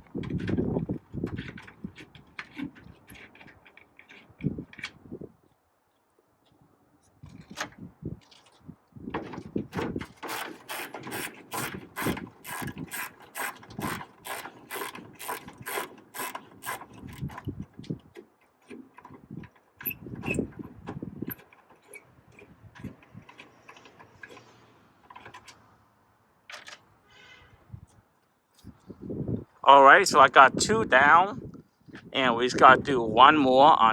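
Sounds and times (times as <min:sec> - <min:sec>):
hand ratchet clicking: 0:10.2 - 0:17.5.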